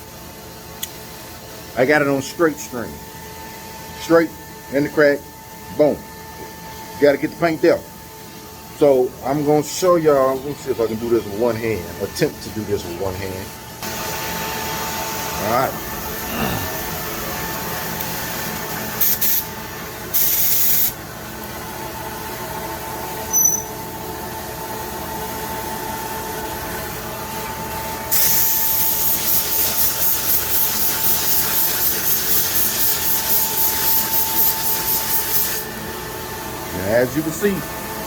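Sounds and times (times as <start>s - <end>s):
steady background hum: 0.0s - 38.0s
paint spray gun hissing: 19.0s - 19.5s, 20.1s - 21.0s, 28.1s - 35.6s.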